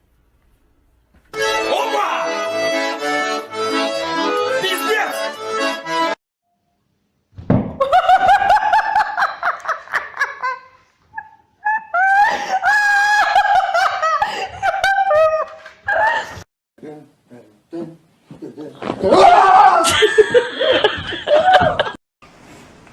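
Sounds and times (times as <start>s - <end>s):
accordion music: 1.3s - 6.2s
high-pitched shrieking laughter: 11.2s - 14.1s, 19.2s - 20.4s.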